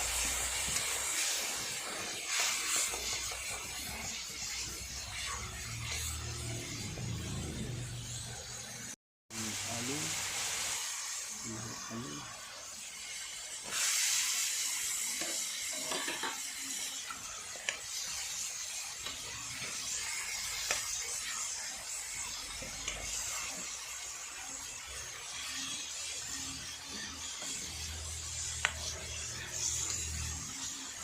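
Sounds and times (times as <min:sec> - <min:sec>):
curry sizzling in a pan: 0:00.0 - 0:31.0.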